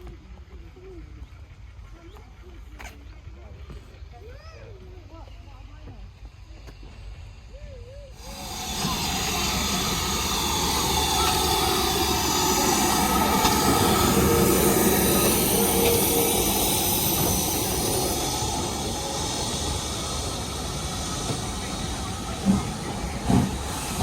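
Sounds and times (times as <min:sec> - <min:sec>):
steam train rushing past: 0:06.2 - 0:24.0.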